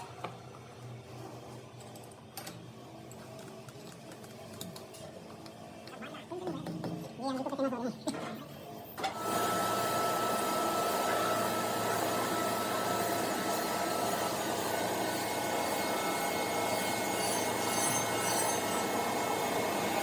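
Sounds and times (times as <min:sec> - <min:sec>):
power tool running with whine: 0:09.0 - 0:20.0.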